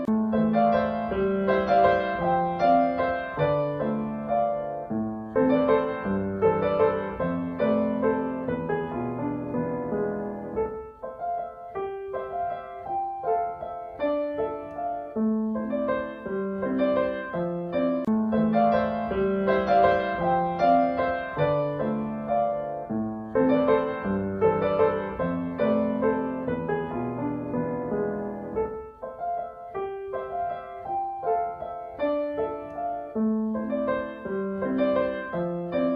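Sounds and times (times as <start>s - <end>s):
slow piano music: 0.0s - 35.9s.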